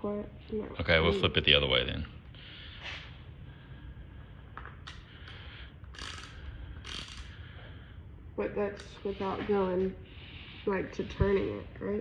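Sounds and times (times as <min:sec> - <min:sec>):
ratcheting wrench scrapes and clicks: 0:04.8 - 0:07.4.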